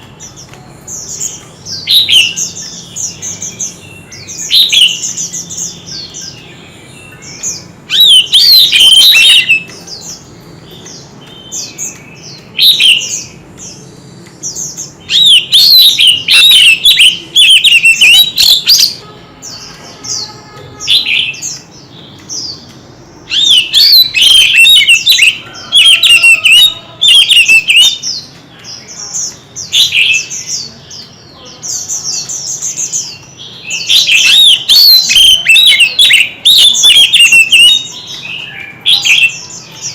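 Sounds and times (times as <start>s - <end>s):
bird singing whistled phrases: 1.1s - 10.1s, 10.8s - 13.4s, 15.0s - 21.6s, 23.3s - 28.3s, 31.9s - 39.9s.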